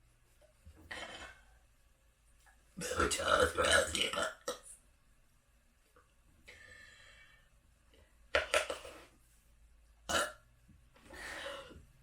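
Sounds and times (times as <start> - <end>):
short abrupt burps: 10.1 - 10.4.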